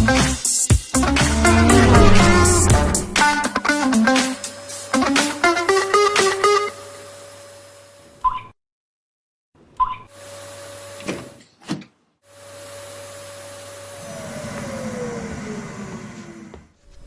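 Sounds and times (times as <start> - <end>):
low rumble: 1.0 - 3.5
vacuum motor whining: 13.9 - 16.7.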